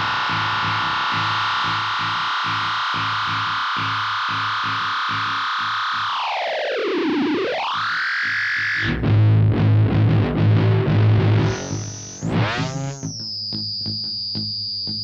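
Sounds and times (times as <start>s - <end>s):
distorted effects pedal drone: 0.0s - 14.8s
pulsing low note: 10.6s - 13.2s.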